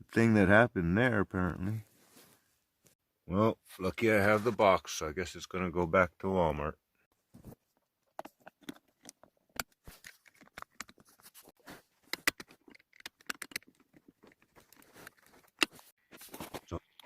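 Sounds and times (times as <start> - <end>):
objects tapping and clicking: 12.1 - 15.8.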